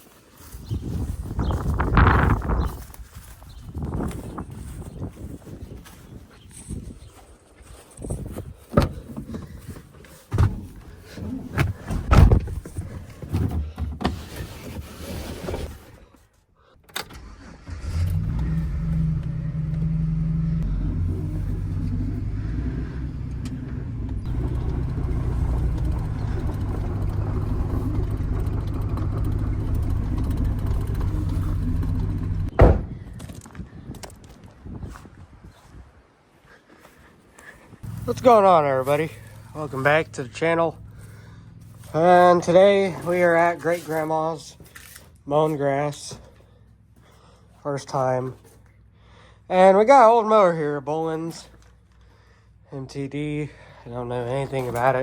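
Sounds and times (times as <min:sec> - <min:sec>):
tractor engine running: 0:17.2 - 0:33.2, 0:37.8 - 0:49.0
sharp knock: 0:32.6 - 0:33.0.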